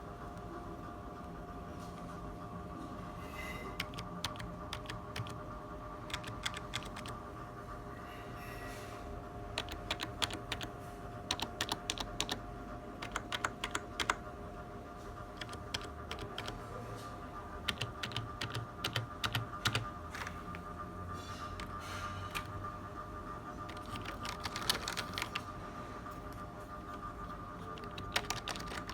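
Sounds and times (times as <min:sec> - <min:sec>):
background hum: 0:00.0 - 0:28.9
computer keyboard typing: 0:03.8 - 0:05.4, 0:06.0 - 0:07.2, 0:09.5 - 0:12.4, 0:13.0 - 0:14.2, 0:15.3 - 0:16.6, 0:17.6 - 0:20.7, 0:21.6 - 0:22.7, 0:23.6 - 0:25.5, 0:26.2 - 0:28.9.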